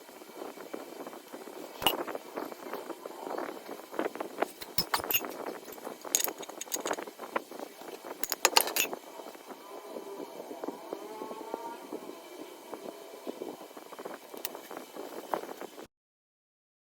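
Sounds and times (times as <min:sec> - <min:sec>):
metal tools clinking: 0:04.8 - 0:07.0, 0:08.2 - 0:09.0.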